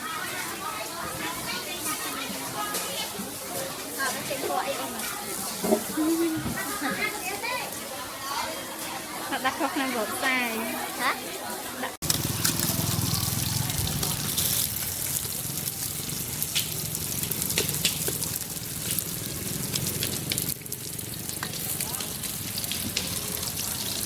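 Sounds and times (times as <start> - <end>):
food sizzling in hot oil: 12.0 - 24.0
oil popping and crackling: 12.0 - 24.0.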